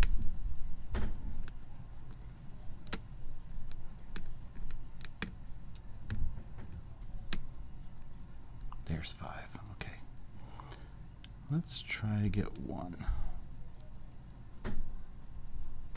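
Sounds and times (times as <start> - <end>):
lock pick metallic clicks: 1.4 - 3.1, 3.7 - 5.4.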